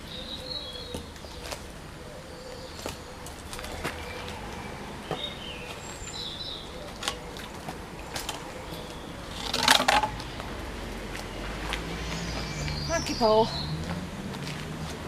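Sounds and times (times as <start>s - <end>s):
rustling clatter: 9.3s - 10.3s.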